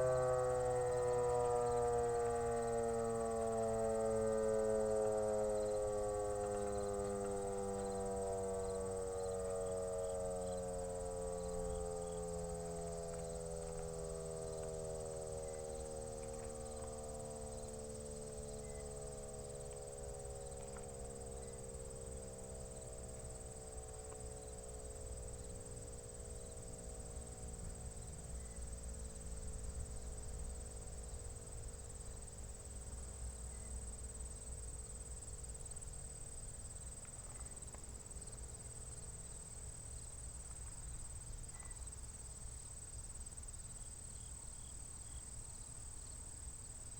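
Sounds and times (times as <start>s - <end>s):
warning siren winding down: 0.0s - 25.2s
insects chirring: 0.0s - 46.9s.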